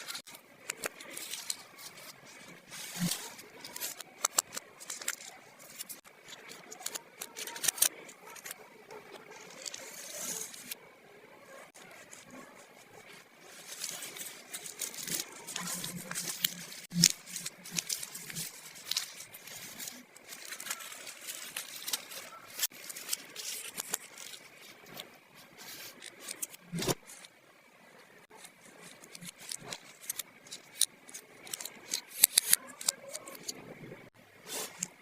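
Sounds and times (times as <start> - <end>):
plastic toy pieces clicking: 0.0 - 10.8, 28.4 - 33.6.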